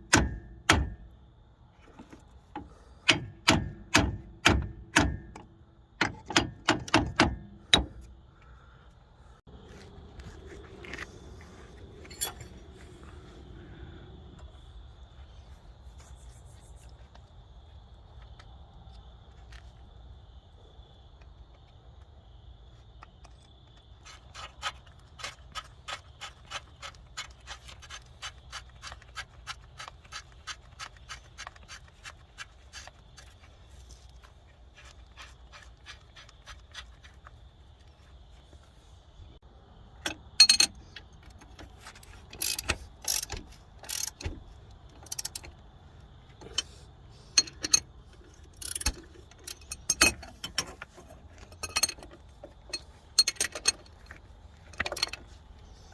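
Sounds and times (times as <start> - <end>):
metal tools clinking: 12.0 - 12.8, 40.4 - 40.8, 47.3 - 55.3
ratchet wrench clicking: 42.4 - 44.2, 45.0 - 45.4, 48.5 - 50.1.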